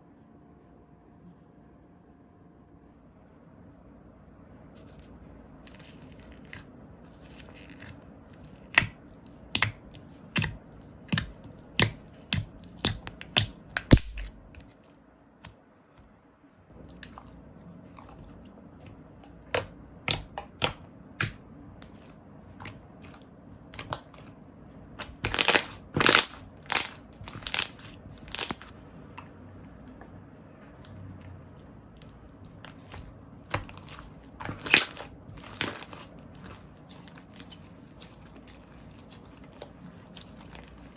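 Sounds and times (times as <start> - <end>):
slime popping: 7.2 - 14.6, 19.2 - 24.3, 25.0 - 28.7, 31.9 - 40.9.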